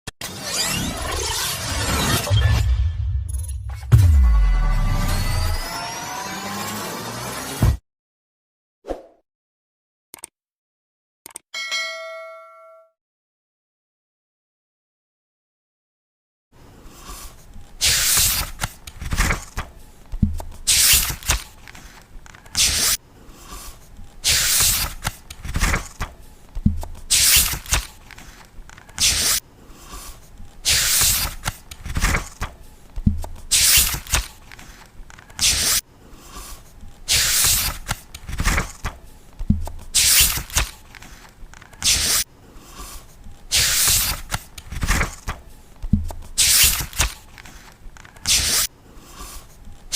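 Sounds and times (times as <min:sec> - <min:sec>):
book pages flipping: 0:16.8 - 0:49.9.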